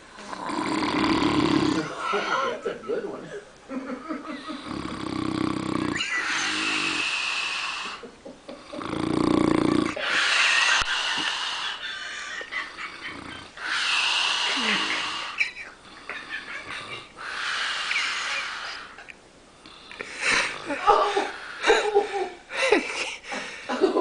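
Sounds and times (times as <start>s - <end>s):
man snoring: 0.2s - 2.3s, 4.5s - 8.0s, 8.6s - 11.8s, 12.7s - 15.4s.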